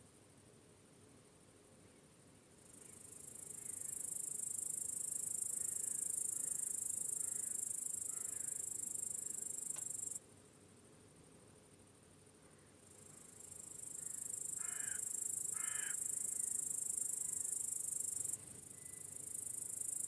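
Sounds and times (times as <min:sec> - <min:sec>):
cricket trilling: 0:02.7 - 0:10.2, 0:12.8 - 0:20.0.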